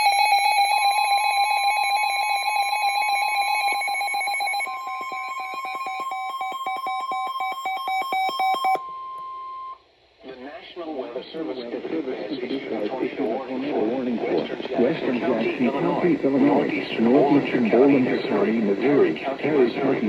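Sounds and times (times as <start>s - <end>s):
steady alarm tone: 0.0s - 9.8s
electronic alarm beeping rapidly: 0.6s - 9.8s.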